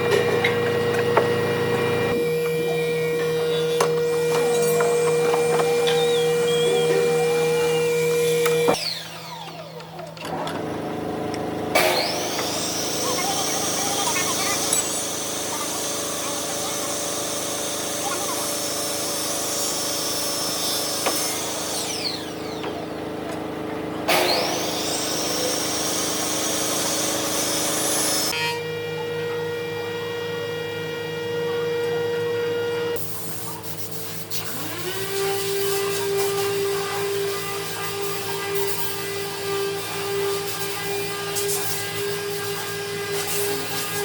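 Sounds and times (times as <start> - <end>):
motor whine: 0.0 - 33.6
power tools running: 0.0 - 44.0.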